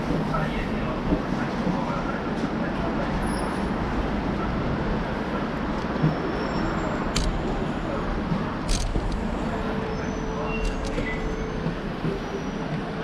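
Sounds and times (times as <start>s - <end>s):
traffic: 0.0s - 13.0s
sharp clicks: 7.1s - 7.5s, 8.7s - 9.3s, 10.6s - 11.2s.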